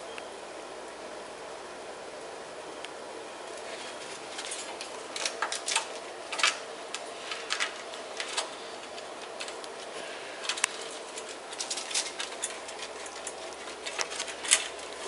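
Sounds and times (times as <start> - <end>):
steady background hum: 0.0 - 15.0
claws scrabbling and scratching: 3.4 - 15.0.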